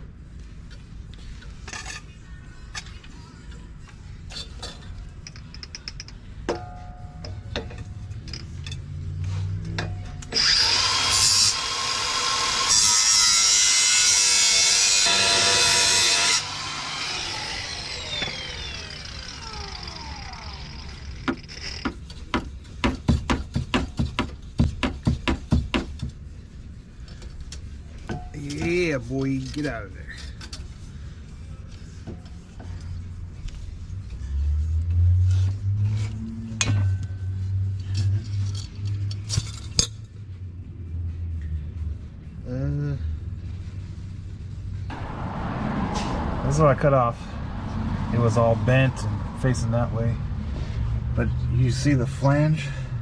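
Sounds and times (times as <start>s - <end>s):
cut-off disc cutting steel pipe: 10.2s - 21.9s.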